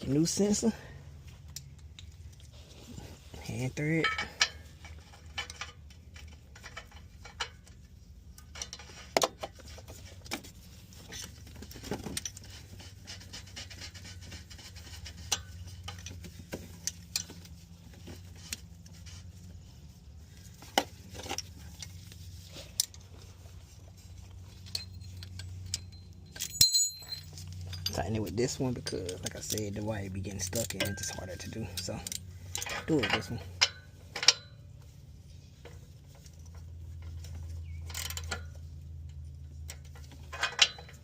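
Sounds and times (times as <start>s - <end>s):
steady low hum: 0.0s - 41.0s
ringing metal clink: 24.6s - 29.3s, 30.6s - 32.1s
metallic clinks of hand tools: 24.6s - 29.8s, 30.4s - 34.6s.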